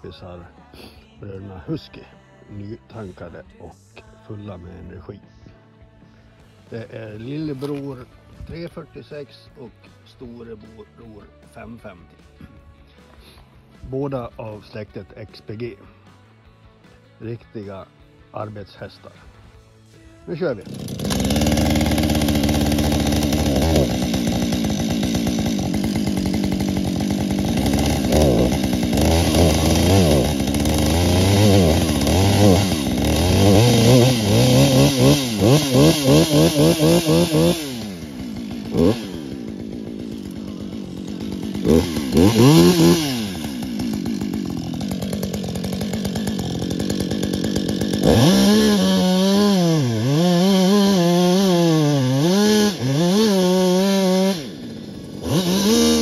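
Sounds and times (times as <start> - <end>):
chainsaw revving: 6.7 - 8.1, 20.4 - 56.0.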